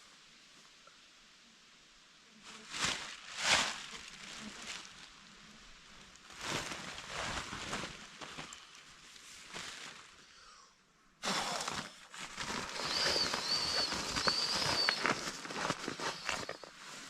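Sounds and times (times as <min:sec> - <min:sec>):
outdoor background noise: 0:00.0 - 0:17.0
soft rustling: 0:02.4 - 0:10.3, 0:11.5 - 0:17.0
bird whistling: 0:12.8 - 0:16.7.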